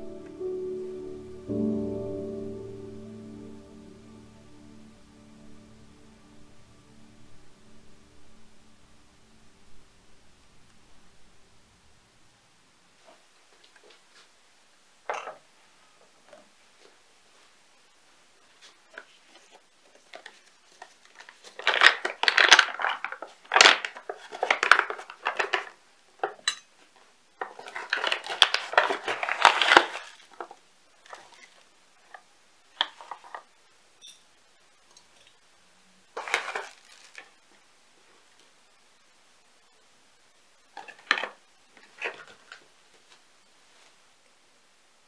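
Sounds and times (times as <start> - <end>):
clattering and crinkling: 15.0 - 17.0, 18.5 - 33.6, 36.1 - 37.6, 40.7 - 44.0.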